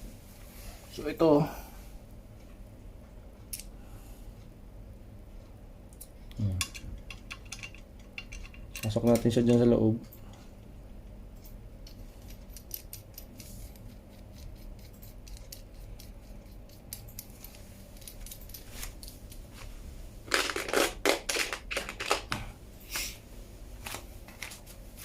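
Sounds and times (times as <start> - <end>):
metal clicks and rattles: 6.6 - 10.3, 11.4 - 13.9.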